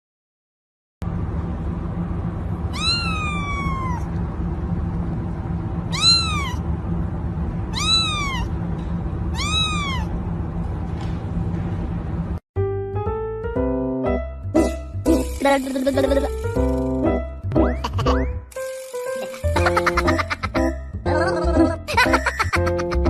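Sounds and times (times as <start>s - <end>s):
steady low hum: 1.0s - 12.4s
cat meowing: 2.7s - 4.1s, 5.9s - 6.6s, 7.7s - 8.6s, 9.3s - 10.2s.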